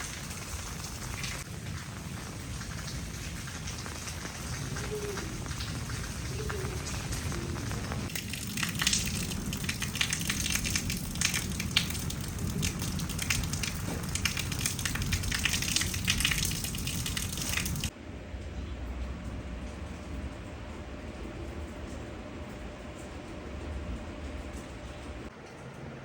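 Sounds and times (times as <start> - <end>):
heavy rain pattering: 0.0 - 17.9.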